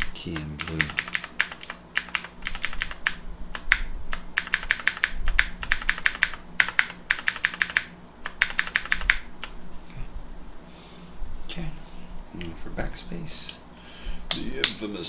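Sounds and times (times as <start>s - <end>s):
mechanical keyboard typing clicks: 0.3s - 9.2s.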